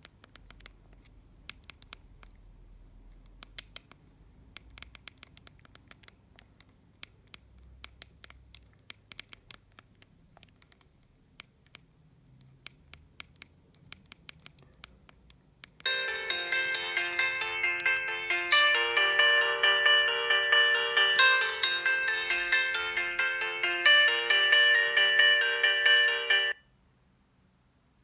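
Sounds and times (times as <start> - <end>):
ringtone melody from phone speaker: 15.9 - 26.6.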